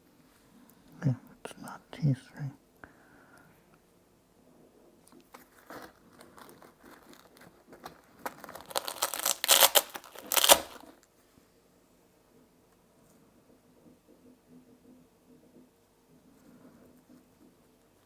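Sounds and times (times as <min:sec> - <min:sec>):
crinkling and rustling: 0:05.0 - 0:11.1.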